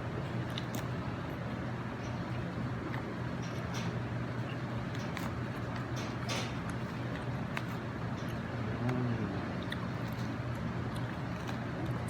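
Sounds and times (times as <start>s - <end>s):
chewing food: 0.2s - 12.0s
crunch: 0.3s - 1.0s, 9.6s - 12.0s.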